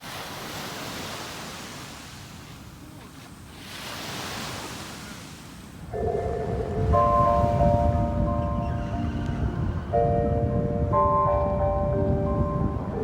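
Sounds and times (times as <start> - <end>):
surf washing on a beach: 0.0 - 13.0
loudspeaker chime: 6.0 - 13.0.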